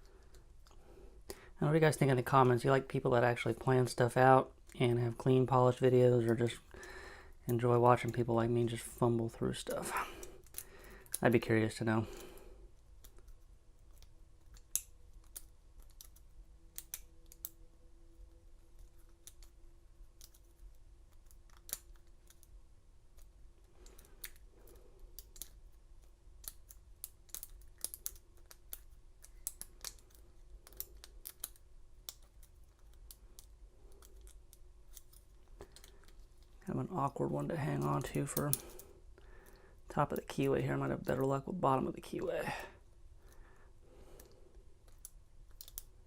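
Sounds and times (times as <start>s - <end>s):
lock pick clicking and scraping: 13.0s - 17.6s, 18.2s - 36.6s, 44.2s - 46.0s.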